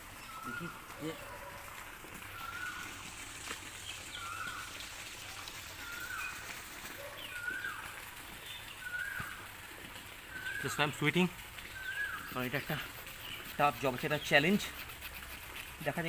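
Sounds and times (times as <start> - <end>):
small saw cutting a branch: 12.0 - 16.0.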